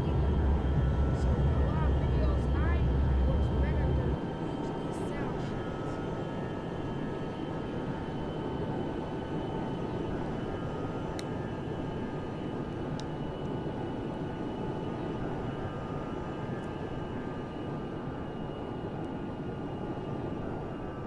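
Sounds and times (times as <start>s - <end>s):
thin high whine: 0.0s - 4.2s
jet engines rumbling: 0.0s - 5.7s.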